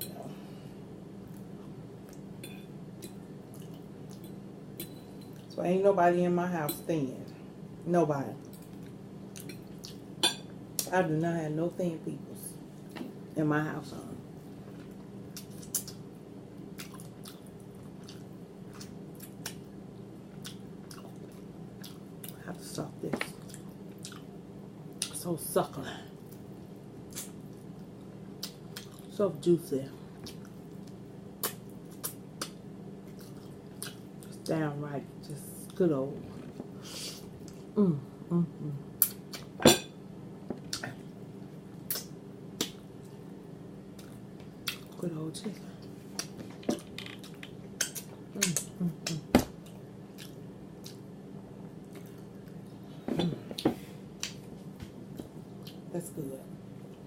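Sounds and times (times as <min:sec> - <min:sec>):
steady low hum: 0:00.0 - 0:57.0
person chewing with wet smacks: 0:03.0 - 0:04.3, 0:08.4 - 0:10.1, 0:16.7 - 0:19.7, 0:20.3 - 0:22.4, 0:23.4 - 0:24.3, 0:26.2 - 0:29.1, 0:30.2 - 0:34.4, 0:39.0 - 0:39.6, 0:40.6 - 0:43.2, 0:43.9 - 0:45.0, 0:45.6 - 0:52.8, 0:54.2 - 0:55.9.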